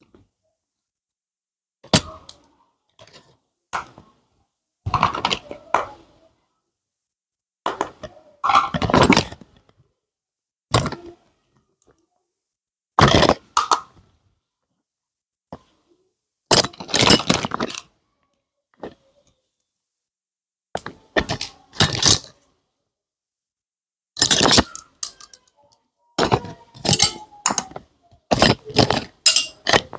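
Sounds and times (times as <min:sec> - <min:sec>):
toy pieces and packaging handled: 0:24.2 - 0:29.9.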